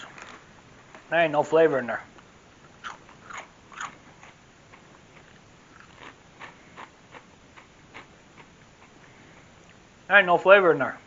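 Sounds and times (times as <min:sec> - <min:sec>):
person crunching potato chips: 0:02.7 - 0:08.5.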